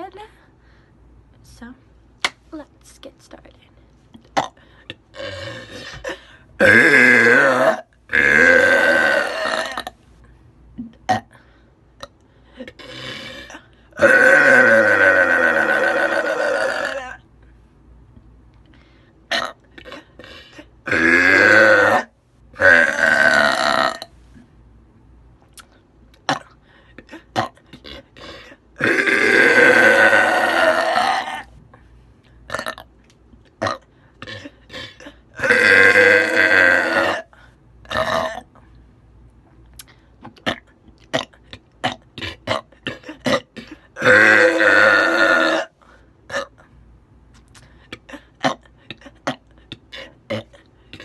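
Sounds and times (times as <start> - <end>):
woman burping: 4.3 - 9.9, 12.0 - 17.2, 19.3 - 24.1, 26.2 - 31.5, 32.5 - 32.9, 33.6 - 37.3, 37.9 - 38.5, 40.4 - 45.7, 48.0 - 51.0.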